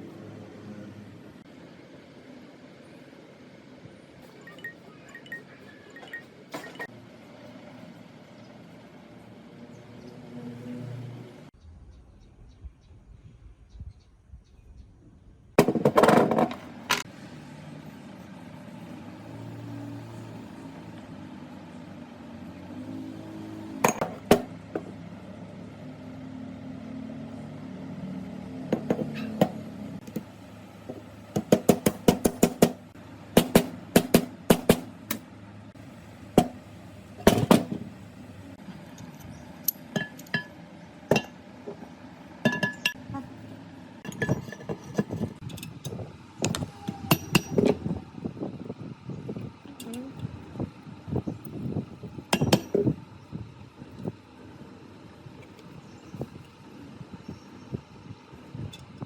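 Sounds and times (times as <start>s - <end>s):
low mechanical hum: 0.0s - 59.0s
sharp metallic knocks and clinks: 4.5s - 6.9s, 39.0s - 41.4s, 42.4s - 43.0s, 44.0s - 45.8s, 46.4s - 47.8s, 52.3s - 53.0s.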